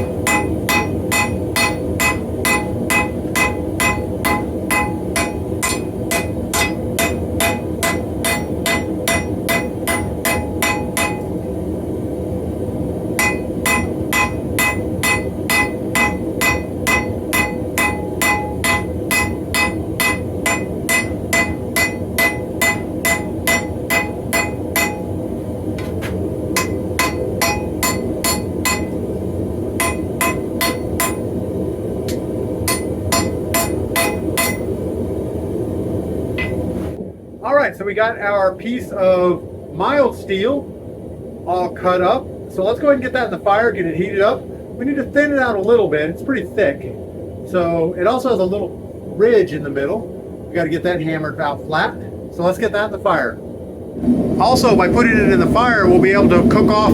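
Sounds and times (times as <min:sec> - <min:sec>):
hammer striking steel on anvil: 0:00.0 - 0:11.4, 0:13.2 - 0:25.2, 0:25.8 - 0:29.0, 0:29.8 - 0:31.4, 0:32.1 - 0:34.7, 0:36.4 - 0:36.6
low running noise: 0:00.0 - 0:56.9.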